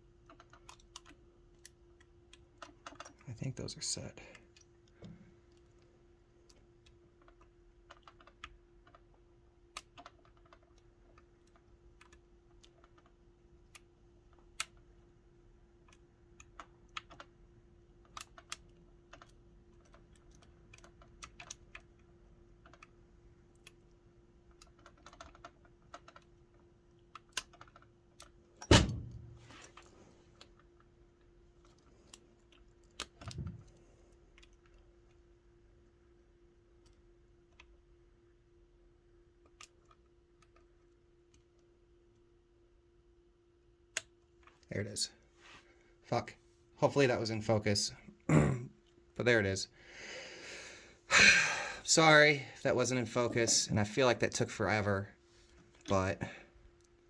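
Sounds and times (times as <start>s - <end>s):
steady low hum: 0.0s - 57.0s
lock pick clicking in a lock: 27.2s - 29.1s.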